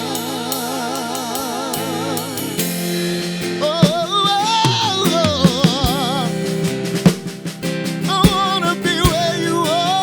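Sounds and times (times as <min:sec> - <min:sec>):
worship band music with singing: 0:00.0 - 0:10.0.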